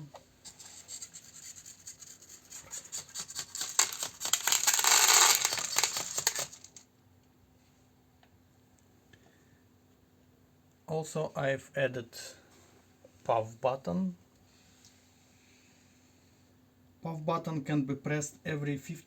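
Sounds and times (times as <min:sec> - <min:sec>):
kibble falling in small clicks: 0:03.6 - 0:06.8.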